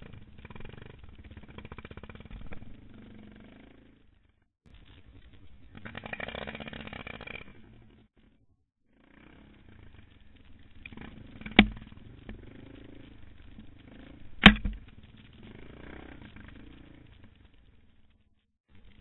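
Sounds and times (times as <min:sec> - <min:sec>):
motorcycle engine running: 0:08.9 - 0:18.2.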